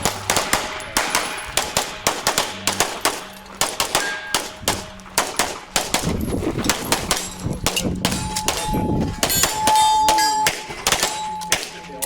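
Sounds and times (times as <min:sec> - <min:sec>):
rapid handgun fire: 0:00.0 - 0:11.8
steel targets ringing: 0:00.0 - 0:12.0.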